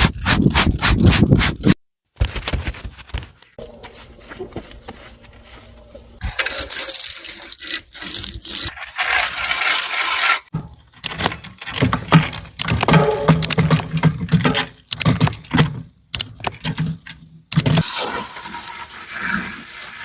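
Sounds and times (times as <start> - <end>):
water spraying onto bicycle: 6.2 - 10.5, 17.8 - 20.0
clicks and knocks: 10.5 - 17.7.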